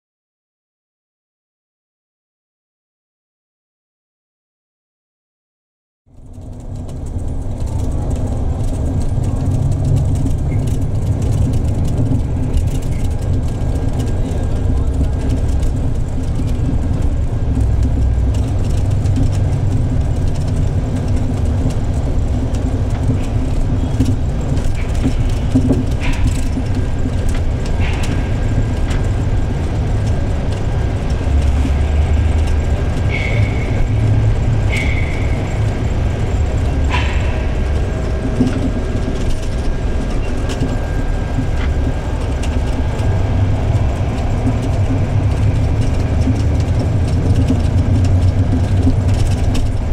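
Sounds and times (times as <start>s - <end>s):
bus diesel engine rumbling: 6.1s - 49.9s
exhaust pops: 6.1s - 49.9s.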